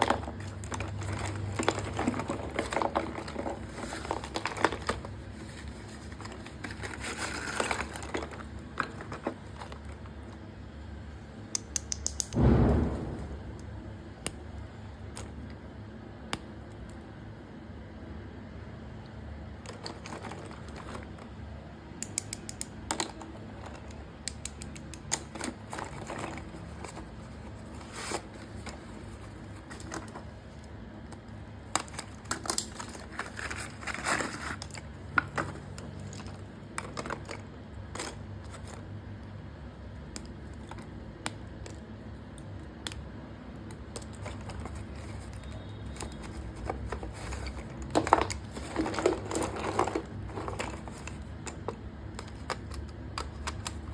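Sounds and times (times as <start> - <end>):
crackly handling: 0.0 - 12.4, 18.7 - 53.9
small hard objects clicking: 11.5 - 12.4, 22.0 - 27.0.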